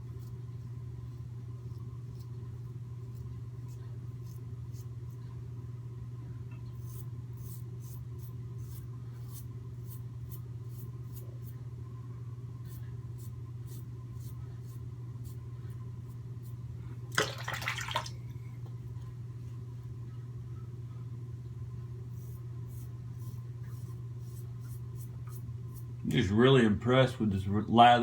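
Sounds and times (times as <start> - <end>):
steady low hum: 0.0 - 28.0
razor scraping stubble: 22.1 - 26.3.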